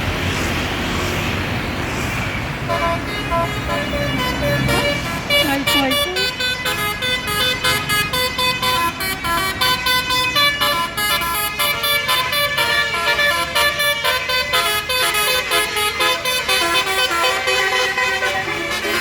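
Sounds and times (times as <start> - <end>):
musical bus horn tune: 2.6 - 19.0.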